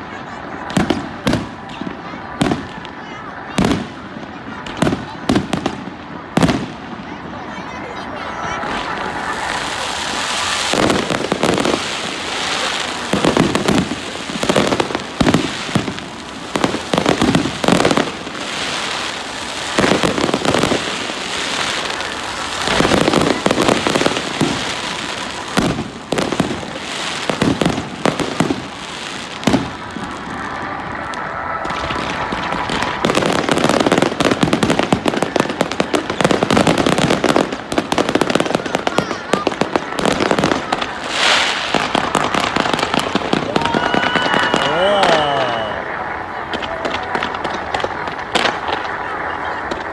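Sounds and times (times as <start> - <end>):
fireworks crackling: 0.0 - 49.9
firework shells bursting: 8.3 - 49.9.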